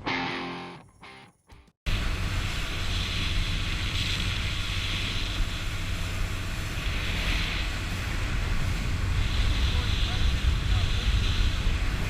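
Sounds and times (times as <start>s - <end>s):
boat motor drone: 1.9s - 12.0s
wind buffeting microphone: 1.9s - 12.0s.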